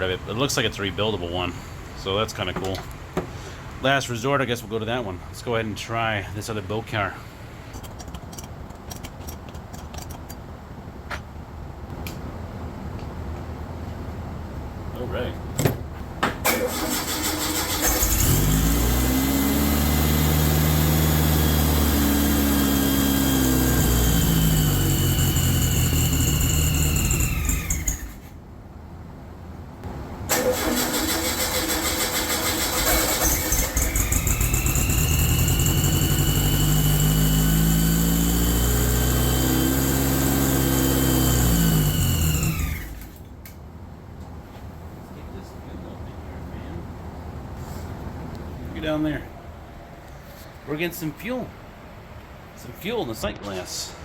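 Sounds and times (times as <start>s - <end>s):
engine starting and winding down: 16.5s - 28.4s, 30.3s - 43.2s.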